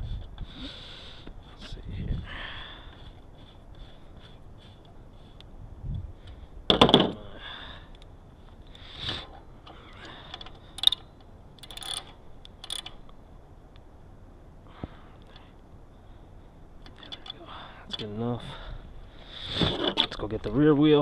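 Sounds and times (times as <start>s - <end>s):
metal tool clicks and clatter: 10.3s - 13.0s.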